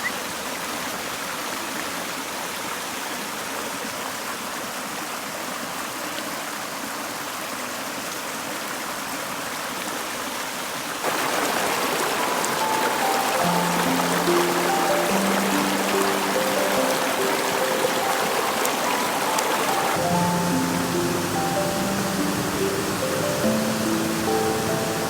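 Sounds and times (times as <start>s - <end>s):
stream flowing: 0.0s - 25.0s
soft music notes: 12.1s - 25.0s.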